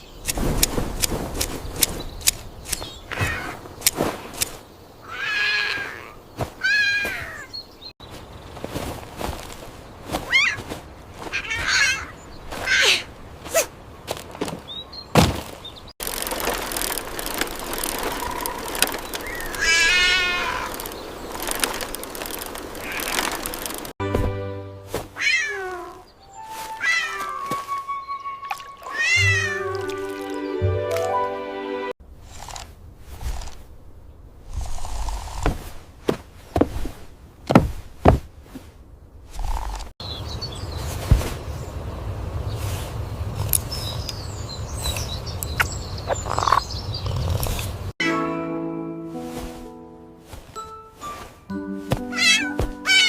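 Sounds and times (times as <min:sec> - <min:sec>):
sharp evenly spaced clicks: 0:00.3 - 0:02.9, 0:16.0 - 0:19.8, 0:20.6 - 0:24.0
cat meowing: 0:19.6 - 0:20.7, 0:25.2 - 0:26.0, 0:26.8 - 0:27.4, 0:28.9 - 0:29.7, 0:52.1 - 0:53.0
background music: 0:24.0 - 0:25.2, 0:26.2 - 0:31.9, 0:48.0 - 0:53.0.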